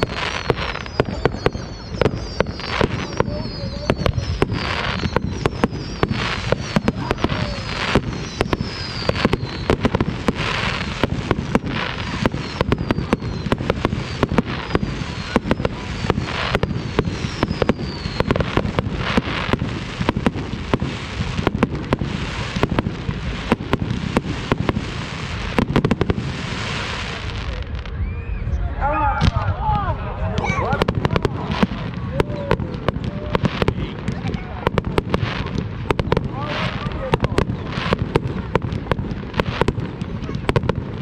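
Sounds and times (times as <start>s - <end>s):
fireworks bangs and crackles: 0.0s - 28.5s, 29.1s - 41.0s
firework whistles falling in pitch: 0.0s - 28.6s, 30.8s - 33.8s.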